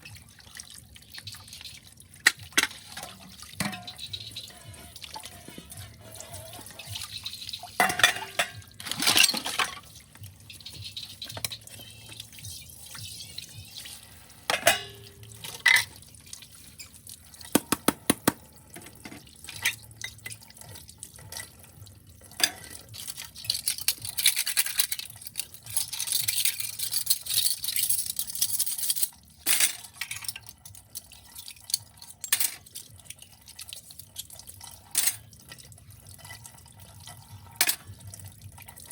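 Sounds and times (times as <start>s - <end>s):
tap water running and dripping: 0.0s - 38.9s
dishes clinking together: 7.8s - 9.8s, 14.5s - 15.9s.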